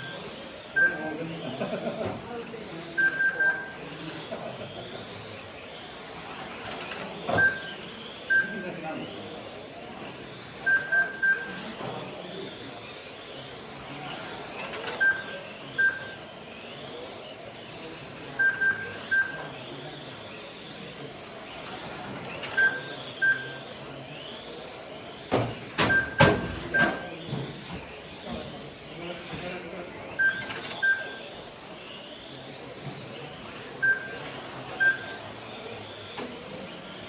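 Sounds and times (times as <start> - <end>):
short electronic beeps: 0.8 - 1.1, 3.0 - 3.8, 7.4 - 8.6, 10.7 - 11.6, 15.0 - 16.2, 18.4 - 19.4, 22.6 - 23.6, 25.9 - 27.1, 30.2 - 31.2, 33.8 - 35.2.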